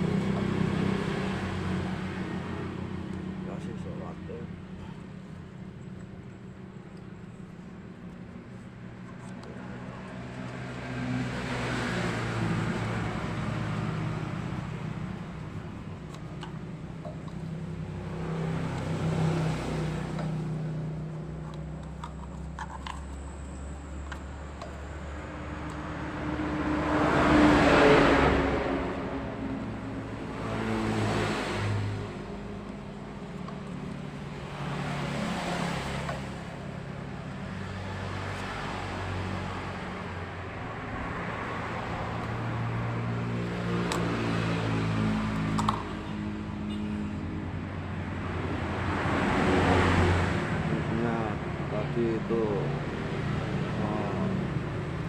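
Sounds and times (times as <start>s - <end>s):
low steady traffic hum: 0.0s - 55.0s
vehicles passing: 0.0s - 55.0s.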